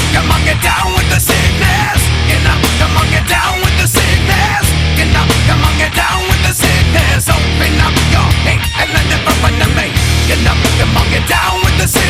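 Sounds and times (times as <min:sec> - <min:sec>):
heavy metal music: 0:00.0 - 0:12.0.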